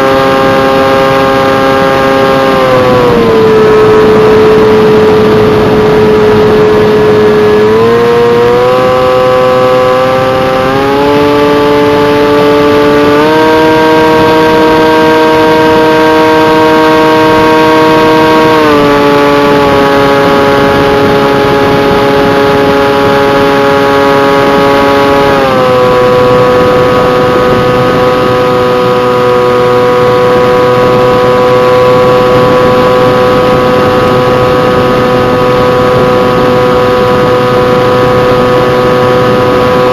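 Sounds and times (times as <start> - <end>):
model plane motor whining: 0.0 - 39.9
rushing air noise: 2.4 - 8.1.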